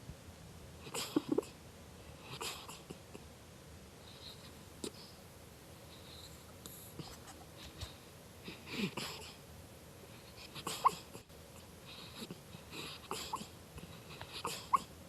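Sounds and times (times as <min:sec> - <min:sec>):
puppy noisy breaths: 0:04.0 - 0:09.4, 0:10.0 - 0:14.9.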